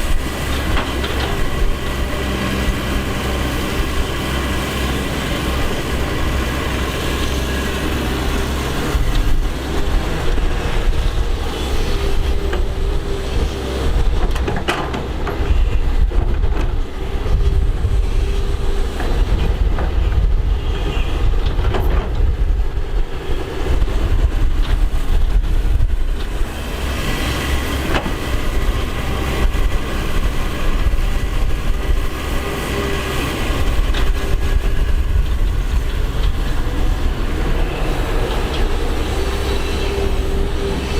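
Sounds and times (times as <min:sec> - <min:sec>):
diesel engine rumbling under load: 0:00.0 - 0:40.9
sharp knocks from machine working: 0:14.2 - 0:15.5, 0:27.8 - 0:28.2.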